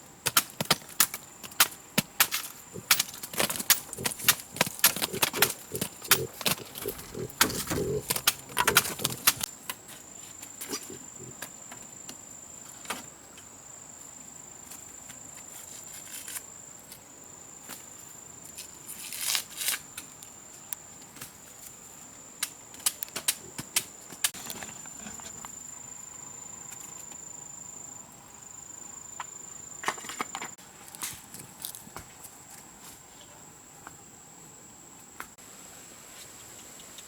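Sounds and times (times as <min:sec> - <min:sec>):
sharp clicks and knocks: 0:00.3 - 0:09.5
rustling: 0:00.5 - 0:11.4.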